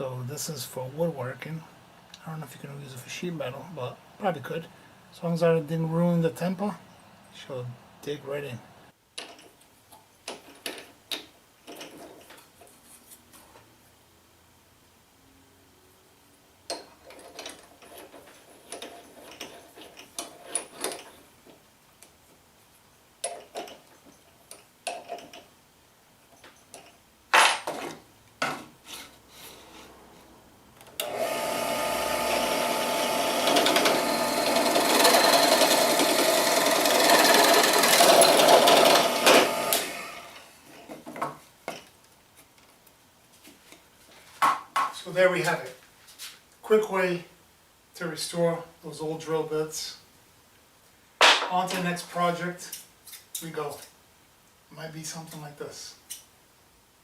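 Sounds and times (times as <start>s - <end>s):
power drill boring into wood: 31.0s - 40.4s.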